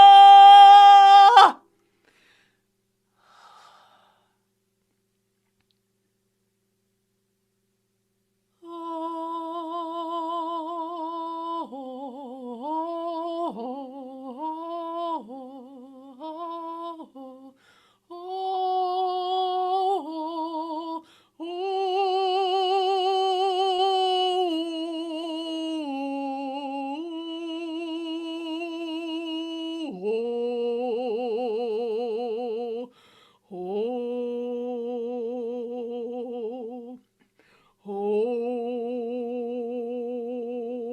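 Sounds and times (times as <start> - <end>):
person breathing: 1.8 - 4.5, 17.6 - 18.1, 21.0 - 21.4, 32.9 - 33.5, 37.3 - 37.8.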